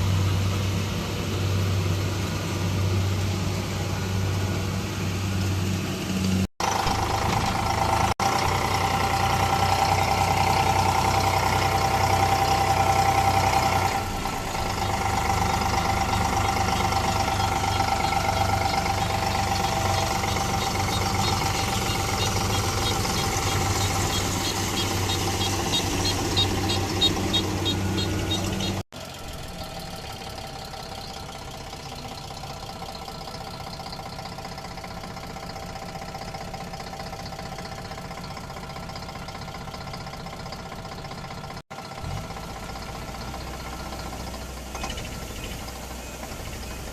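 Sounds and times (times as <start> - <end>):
harvester engine running: 0.0 - 46.9
mechanical knocking rattle: 14.0 - 30.5.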